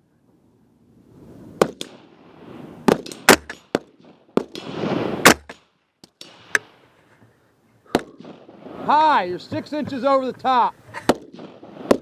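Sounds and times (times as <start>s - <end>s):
rifle shots: 2.8s - 6.8s, 7.9s - 8.9s, 11.1s - 12.0s.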